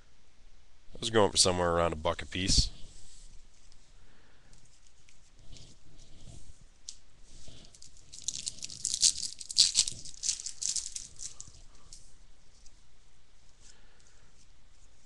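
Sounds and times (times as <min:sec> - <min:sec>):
card pack wrapper crinkling and tearing: 0:07.7 - 0:11.7.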